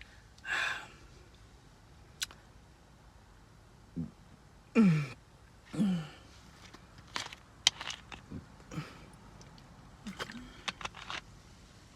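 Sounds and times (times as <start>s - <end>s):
person gulping: 10.0s - 10.8s
swallowing: 10.1s - 10.8s.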